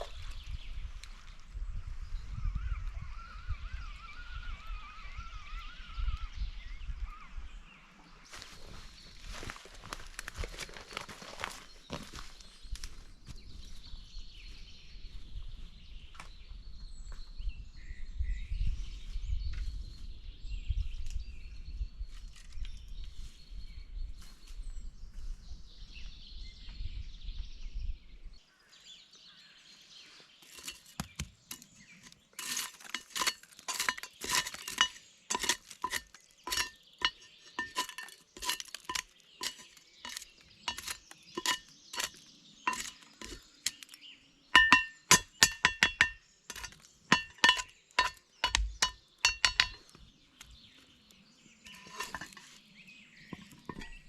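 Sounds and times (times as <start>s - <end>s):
metal cookware clinking: 30.5s - 49.9s, 51.7s - 52.6s, 53.3s - 54.0s.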